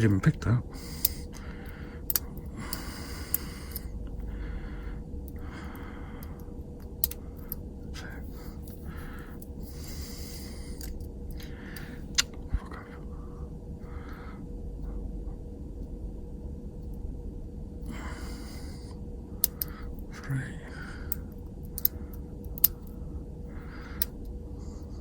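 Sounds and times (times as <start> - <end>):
faint steady hum: 0.0 - 25.0
breathing close to microphone: 0.7 - 6.4, 7.2 - 14.5, 17.9 - 19.0.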